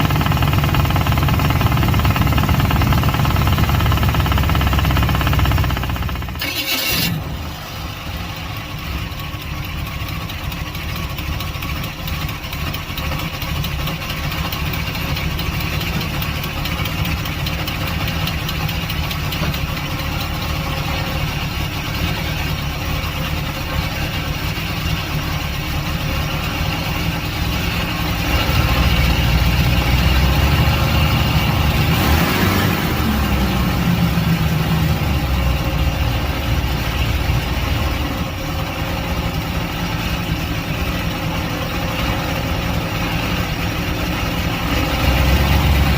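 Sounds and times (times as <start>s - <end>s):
car engine idling: 0.0s - 45.9s
engine ticking noise: 0.0s - 45.9s.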